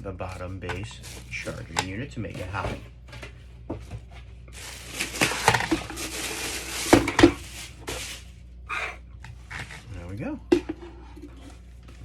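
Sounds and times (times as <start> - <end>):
packaging rustling and crinkling: 0.3 - 8.3.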